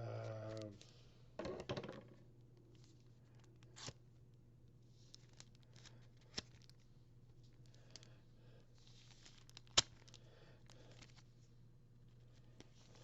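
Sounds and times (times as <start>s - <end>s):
low steady hum: 0.0s - 13.0s
faint paper rustling: 4.8s - 8.1s, 8.8s - 13.0s.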